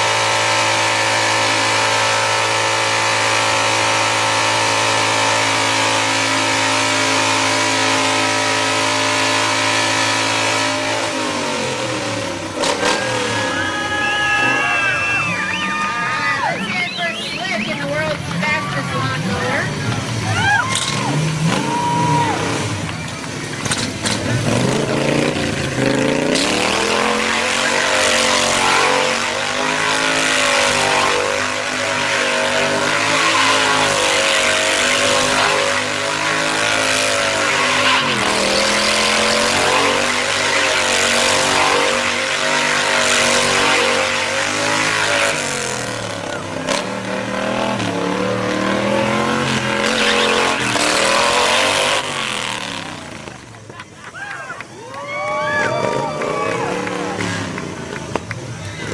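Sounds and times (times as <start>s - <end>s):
lawnmower engine at high revs: 0.0s - 15.8s, 23.6s - 53.8s.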